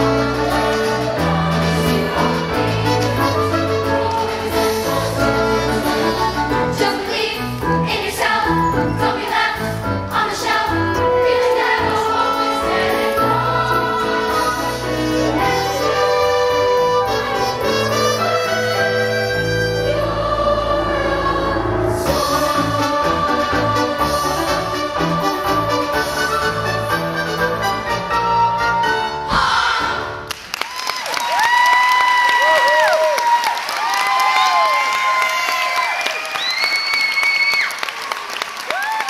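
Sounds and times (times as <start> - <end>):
chorus singing: 0.0 - 27.0, 29.2 - 30.3
instrumental accompaniment: 0.0 - 29.8.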